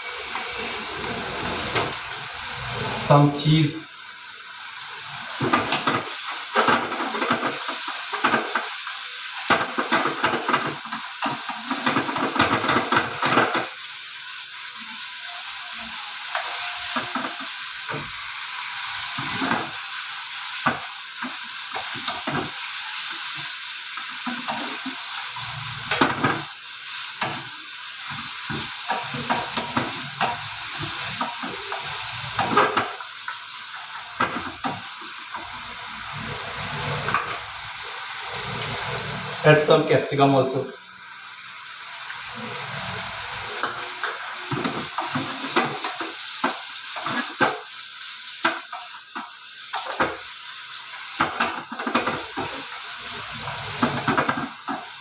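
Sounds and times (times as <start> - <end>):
food sizzling in a pan: 0.0 - 55.0
spoon scraping a pan: 15.0 - 17.6.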